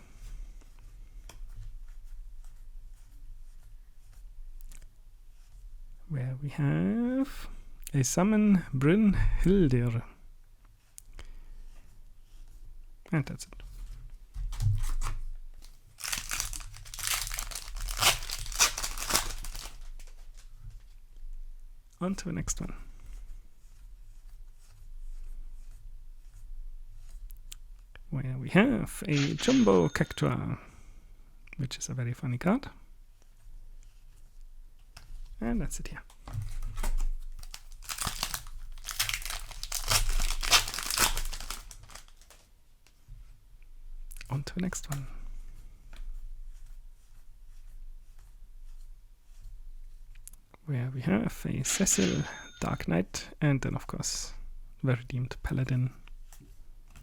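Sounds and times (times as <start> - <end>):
foil wrapper crinkling and tearing: 15.6 - 20.5, 36.8 - 42.5.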